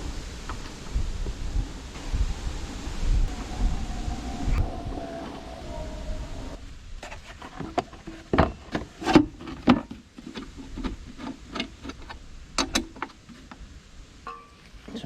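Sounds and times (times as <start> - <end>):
metal parts and hand tools knocking: 14.3 - 14.7.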